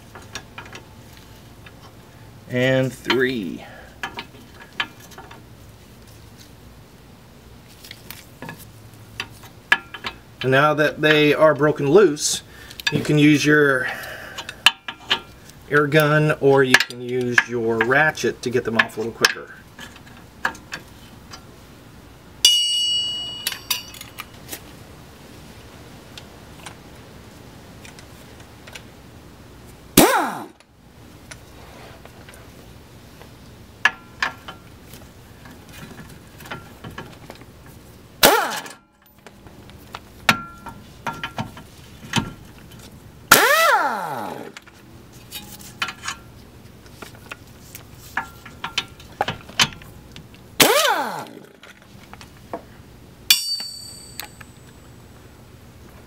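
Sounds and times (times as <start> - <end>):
metal clinks: 22.4 - 24.4, 53.3 - 54.9
air impact wrench whining: 30.0 - 30.6, 38.2 - 38.8, 43.3 - 44.6, 50.6 - 51.6.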